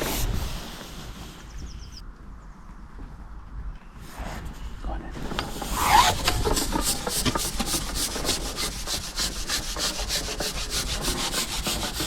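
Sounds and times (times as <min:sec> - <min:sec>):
fishing pole rubbing over roller: 0:05.2 - 0:12.0.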